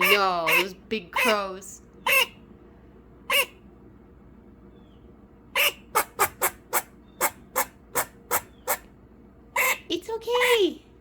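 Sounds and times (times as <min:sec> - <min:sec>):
squirrel barking: 0:00.0 - 0:02.5, 0:03.3 - 0:03.6, 0:05.5 - 0:10.8.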